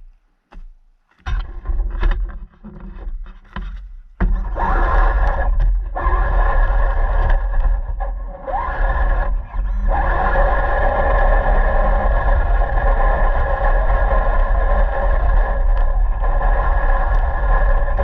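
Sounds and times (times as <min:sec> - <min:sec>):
radio-controlled car motor: 0:04.5 - 0:18.0.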